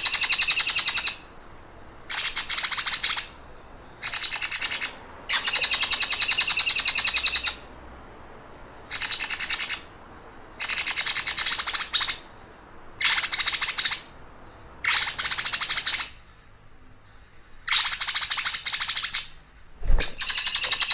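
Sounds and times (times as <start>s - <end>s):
songbird rapid trills: 0.0s - 16.3s.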